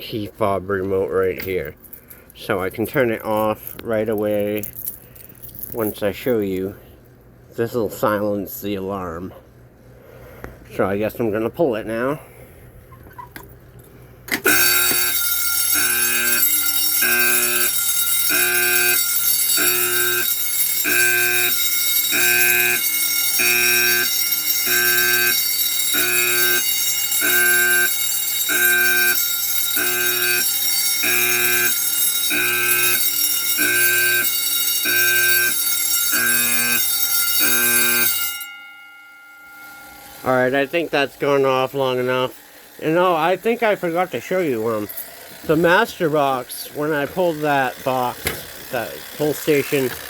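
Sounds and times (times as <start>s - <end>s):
pulsing alarm horn: 14.4s - 42.8s
alarm bells ringing: 14.4s - 50.0s.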